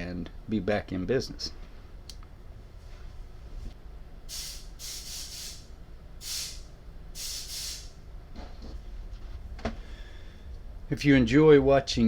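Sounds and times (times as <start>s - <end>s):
hissing puffs of air: 4.3s - 8.0s.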